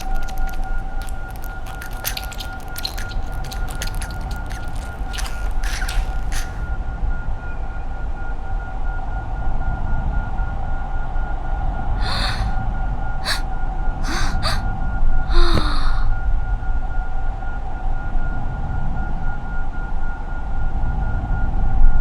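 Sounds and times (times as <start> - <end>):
short breathy bursts: 0.0 - 6.7, 12.0 - 12.5, 13.2 - 14.6, 15.3 - 16.1.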